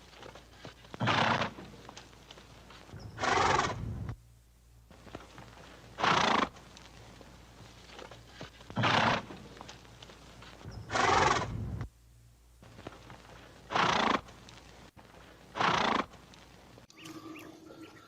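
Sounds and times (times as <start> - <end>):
horse calling: 0.1 - 2.1, 2.9 - 4.1, 5.9 - 6.7, 7.9 - 9.8, 10.6 - 11.8, 13.6 - 14.5, 15.5 - 16.3.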